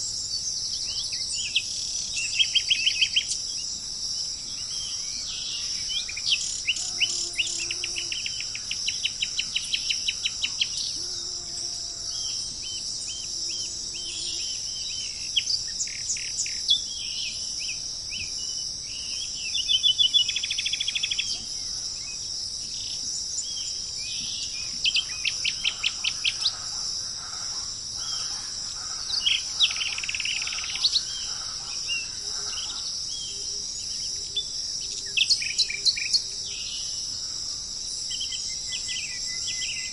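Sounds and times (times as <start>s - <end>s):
insect drone: 0.0s - 39.9s
birds chirping: 19.2s - 34.4s.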